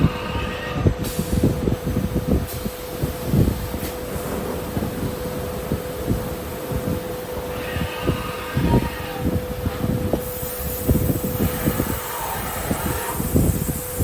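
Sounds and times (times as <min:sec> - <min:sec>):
low rumbling and knocking: 0:00.0 - 0:10.2
machining centre whine: 0:00.0 - 0:14.0
high hiss: 0:10.1 - 0:14.0.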